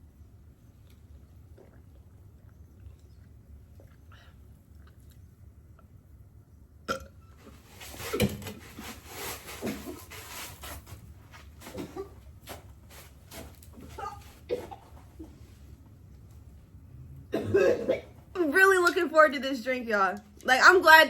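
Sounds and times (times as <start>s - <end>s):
burp-like throat noises: 6.9s - 7.3s
rustling: 7.4s - 15.8s.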